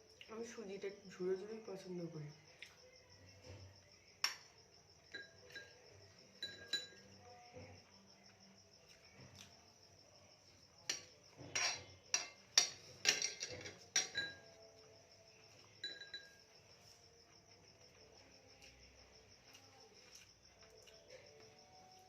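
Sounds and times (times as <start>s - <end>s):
crickets chirring: 0.0s - 22.0s
cutlery clinking on a plate: 4.2s - 5.8s, 6.4s - 7.2s, 10.9s - 14.6s, 15.8s - 16.4s.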